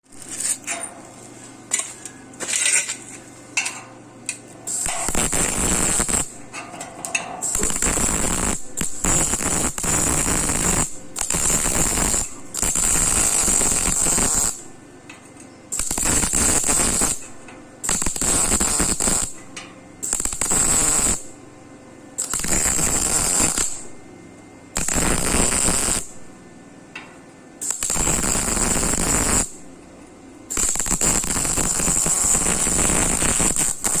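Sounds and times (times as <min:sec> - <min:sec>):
arc welding crackling hiss: 0:04.7 - 0:06.5, 0:07.4 - 0:14.8, 0:15.7 - 0:21.3, 0:22.2 - 0:23.9, 0:24.8 - 0:26.3, 0:27.6 - 0:29.7, 0:30.5 - 0:34.0.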